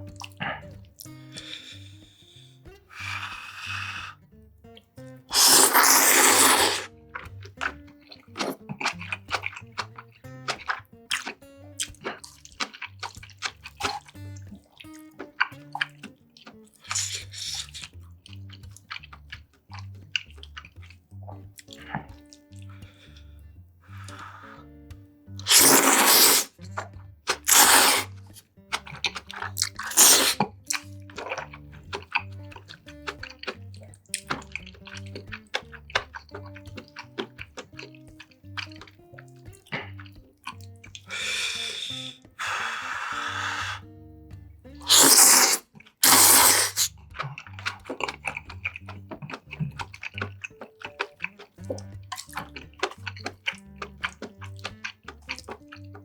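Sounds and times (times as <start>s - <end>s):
hissing mouth noises: 0.0s - 4.3s, 5.3s - 24.8s, 25.4s - 43.9s, 44.8s - 56.0s
soft background music: 0.0s - 45.0s, 46.9s - 56.0s
wet mouth clicks: 0.0s - 56.0s
breathy bursts: 0.4s - 4.3s, 5.3s - 6.9s, 16.8s - 17.9s, 21.7s - 24.8s, 25.4s - 26.6s, 27.4s - 28.2s, 29.8s - 30.4s, 40.8s - 44.0s, 44.8s - 46.9s.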